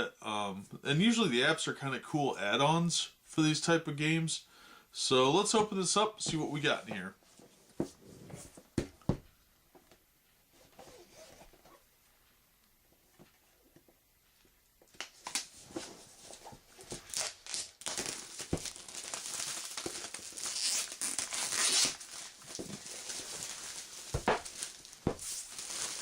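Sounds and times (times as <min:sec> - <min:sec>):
shrink wrap crinkling and tearing: 0:16.9 - 0:26.0
box knocks: 0:24.2 - 0:24.5.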